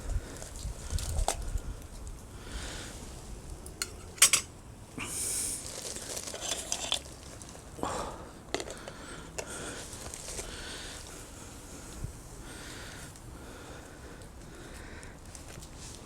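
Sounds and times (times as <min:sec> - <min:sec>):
metal cookware clinking and scraping: 0:03.8 - 0:04.5.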